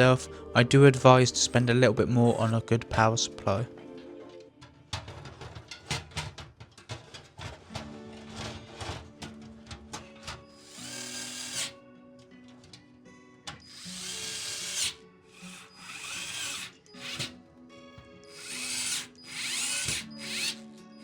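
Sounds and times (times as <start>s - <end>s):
electric screwdriver whirring: 10.3s - 11.8s, 13.6s - 17.4s, 18.2s - 20.6s.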